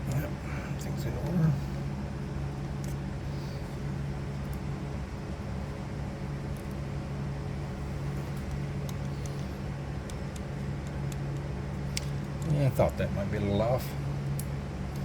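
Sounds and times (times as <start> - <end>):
low background hum: 0.0 - 15.0.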